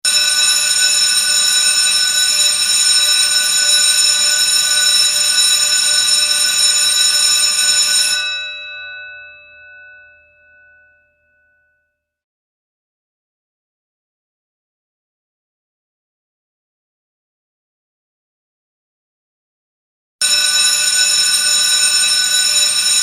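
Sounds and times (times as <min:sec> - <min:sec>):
emergency alarm bell ringing: 0:00.1 - 0:11.9, 0:20.2 - 0:23.0.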